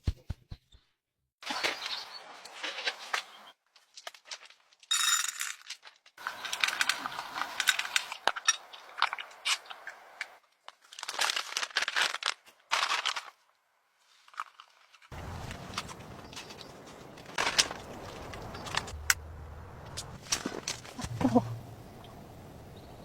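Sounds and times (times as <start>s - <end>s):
crinkling crackling handling noise: 3.6s - 4.9s, 5.5s - 19.2s, 19.9s - 21.5s.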